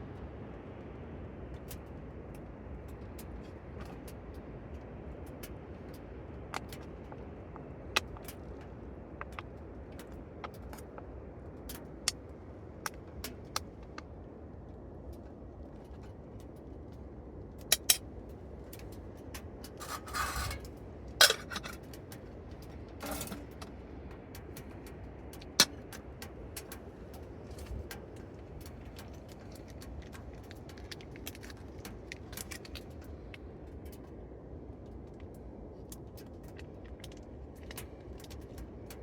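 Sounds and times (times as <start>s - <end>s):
wood fire crackling: 11.7s - 33.6s.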